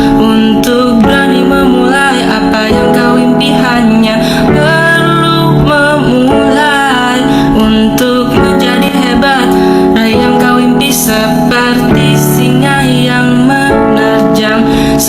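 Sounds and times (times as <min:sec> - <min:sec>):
song with guitar accompaniment: 0:00.0 - 0:15.0.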